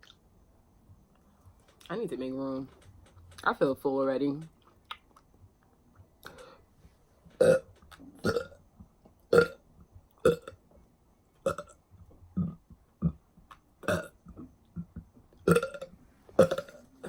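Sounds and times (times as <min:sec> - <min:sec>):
woman burping: 0:07.4 - 0:08.6, 0:09.3 - 0:09.6, 0:12.4 - 0:13.2, 0:13.8 - 0:14.1, 0:15.5 - 0:16.8.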